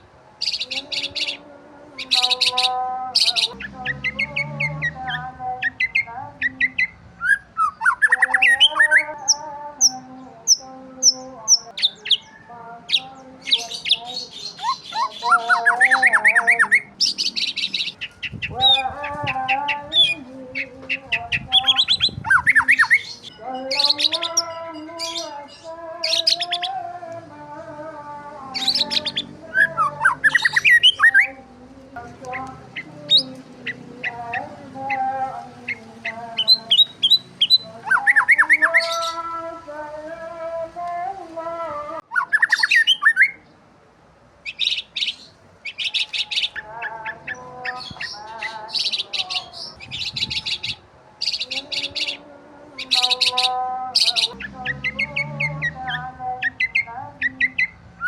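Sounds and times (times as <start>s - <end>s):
birds chirping and trilling: 0.0s - 43.6s, 44.4s - 58.0s
harsh bird squawking: 0.4s - 1.4s, 2.0s - 9.4s, 11.5s - 24.4s, 28.6s - 31.3s, 32.3s - 39.2s, 42.0s - 43.4s, 52.8s - 57.8s.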